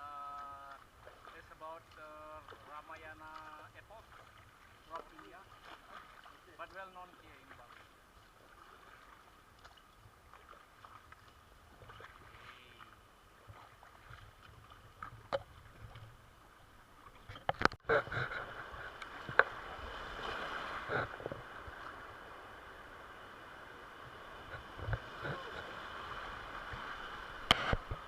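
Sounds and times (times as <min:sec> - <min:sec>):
water splashes: 0:00.0 - 0:28.0
river water rushing: 0:17.9 - 0:28.0.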